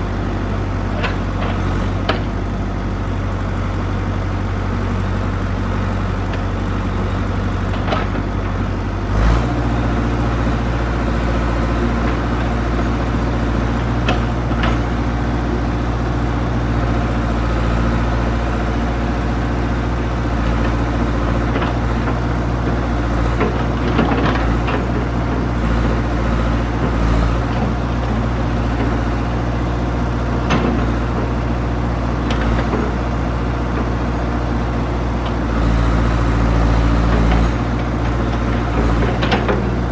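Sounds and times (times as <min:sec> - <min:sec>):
backhoe engine running: 0:00.0 - 0:39.9.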